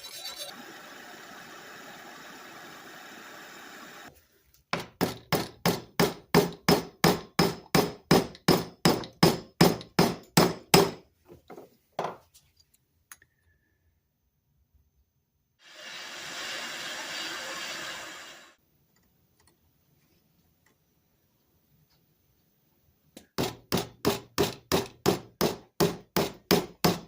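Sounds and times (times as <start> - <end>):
steady hiss: 0.5 - 4.4, 15.6 - 18.9.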